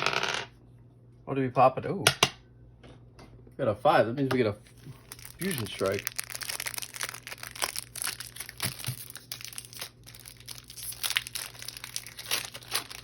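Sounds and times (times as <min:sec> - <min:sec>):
foil wrapper crinkling: 0:04.7 - 0:13.0
foil wrapper tearing: 0:04.8 - 0:13.0.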